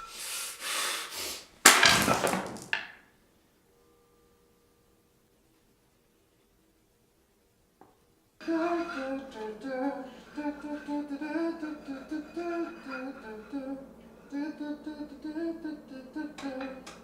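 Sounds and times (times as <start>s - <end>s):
person humming a tune: 8.4s - 17.0s.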